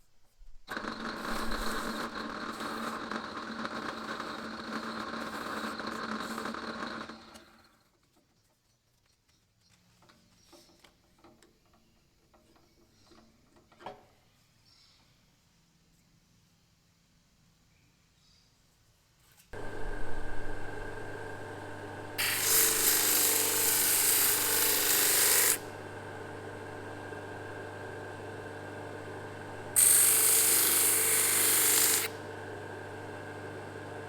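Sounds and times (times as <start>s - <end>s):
power tool motor humming: 0.8s - 3.0s, 19.6s - 33.3s
chisel grinding hiss: 22.2s - 26.4s, 29.5s - 32.2s.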